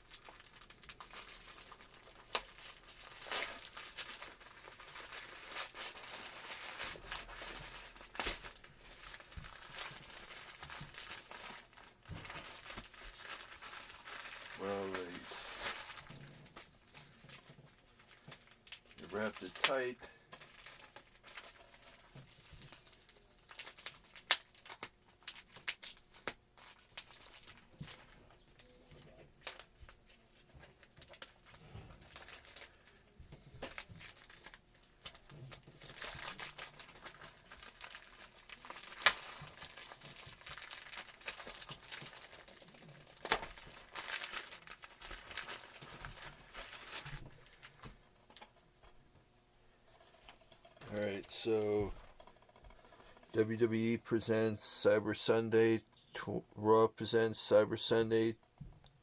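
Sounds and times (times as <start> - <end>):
package being torn open: 33.6 - 47.1.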